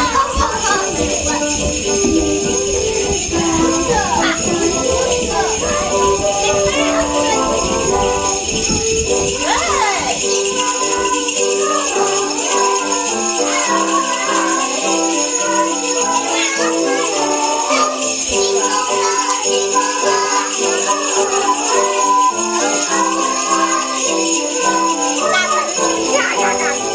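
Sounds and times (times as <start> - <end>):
instrumental melody: 0.0 - 26.9
sleigh bells jingling: 0.0 - 26.9.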